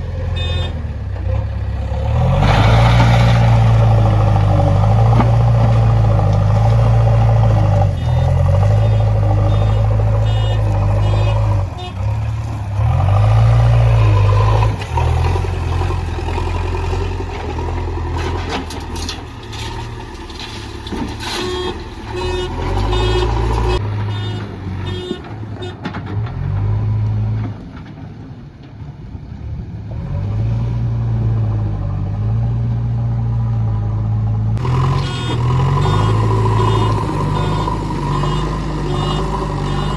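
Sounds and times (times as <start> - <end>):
diesel engine revving: 0.0 - 28.0, 29.2 - 39.9
reversing alarm beeps: 34.9 - 39.9.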